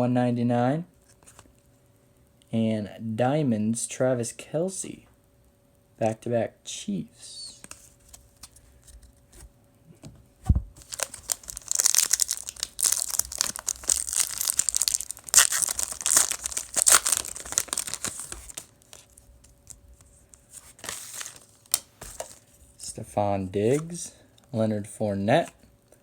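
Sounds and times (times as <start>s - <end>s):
thump: 10.4s - 10.7s
card pack wrapper tearing: 10.8s - 22.4s.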